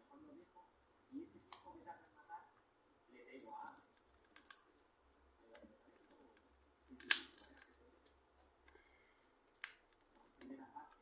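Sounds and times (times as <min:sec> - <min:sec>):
handling small hard parts: 0:03.3 - 0:05.0, 0:06.0 - 0:08.5, 0:09.2 - 0:11.0.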